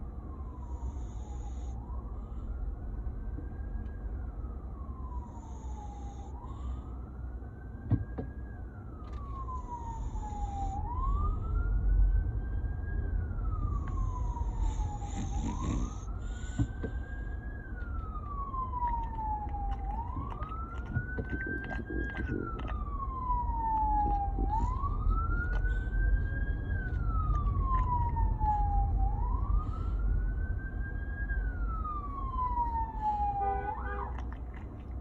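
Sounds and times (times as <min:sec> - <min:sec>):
siren slow wail: 0:00.0 - 0:34.5
steady low rumble: 0:08.9 - 0:35.0.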